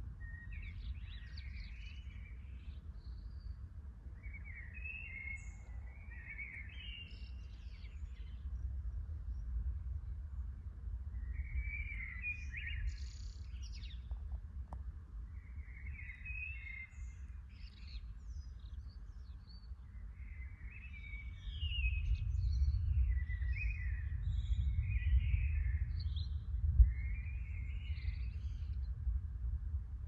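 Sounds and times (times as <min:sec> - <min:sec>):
songbirds chirping and trilling: 0:00.0 - 0:30.0
steady low rumble: 0:21.1 - 0:30.0.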